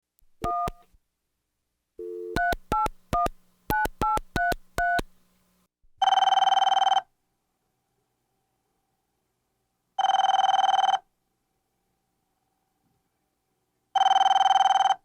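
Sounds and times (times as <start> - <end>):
telephone keypad beeps: 0.4 - 0.8, 2.0 - 5.2.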